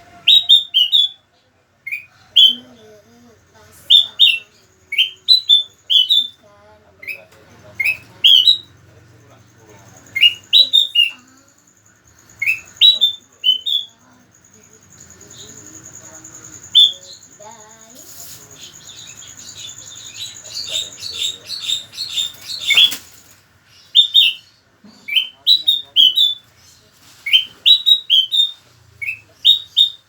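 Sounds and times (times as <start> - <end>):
bird singing whistled notes: 0.0 - 1.2, 3.9 - 6.4, 12.4 - 14.0, 15.3 - 17.3, 27.3 - 30.0.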